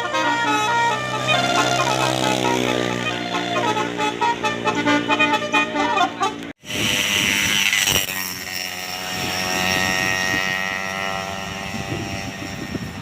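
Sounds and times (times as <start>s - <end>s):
multi-note horn melody: 0.0s - 6.5s
bus diesel engine drone: 0.0s - 13.0s.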